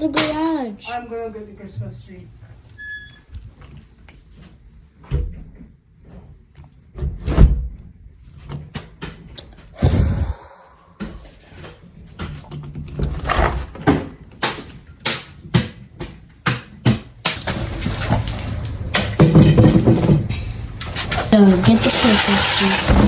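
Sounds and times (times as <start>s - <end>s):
heavy thump: 9.8s - 11.2s
boxes knocking and bumping: 13.1s - 23.0s
rustling and scraping: 17.4s - 23.0s.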